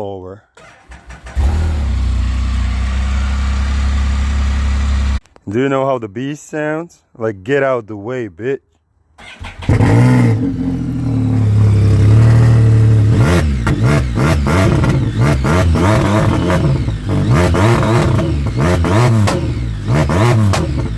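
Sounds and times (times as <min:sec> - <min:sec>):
motorcycle engine idling and revving: 0:00.6 - 0:05.2, 0:09.2 - 0:20.9.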